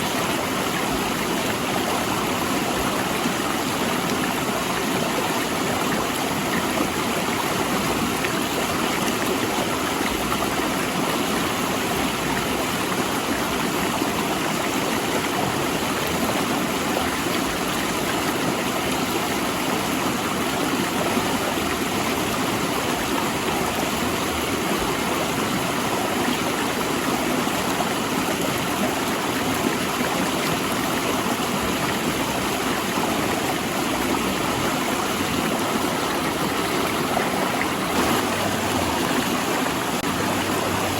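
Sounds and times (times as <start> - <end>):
river rushing over rocks: 0.0 - 40.9.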